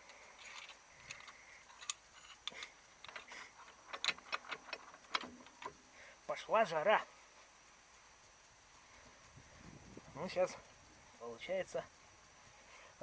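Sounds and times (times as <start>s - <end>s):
metal tools clinking: 0.4s - 5.7s.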